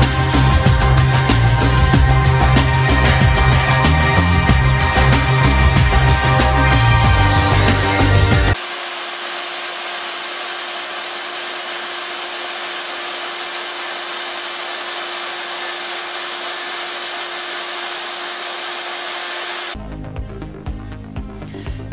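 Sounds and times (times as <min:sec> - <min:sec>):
hot-air welding gun hissing: 0:08.5 - 0:19.8.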